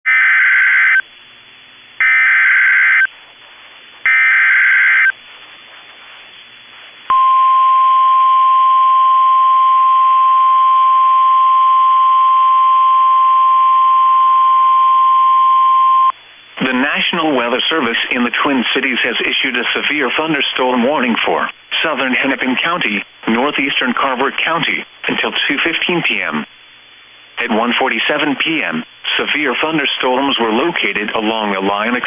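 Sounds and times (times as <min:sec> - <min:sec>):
faint static: 0:00.1 - 0:32.0
harsh warbling data bursts: 0:02.0 - 0:03.1, 0:04.0 - 0:05.2
steady warning alarm tone: 0:02.0 - 0:03.1, 0:04.1 - 0:05.2.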